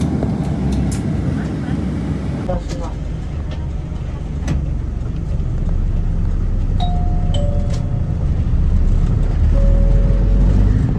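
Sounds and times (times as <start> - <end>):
bus engine and road rumble: 0.0 - 10.9
two-note ding-dong chime: 6.8 - 8.0, 9.6 - 10.6.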